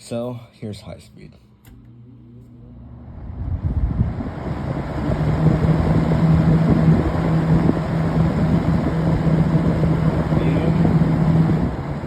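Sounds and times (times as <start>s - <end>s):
low motor hum: 1.6s - 12.0s
box fan rushing air: 1.7s - 12.0s.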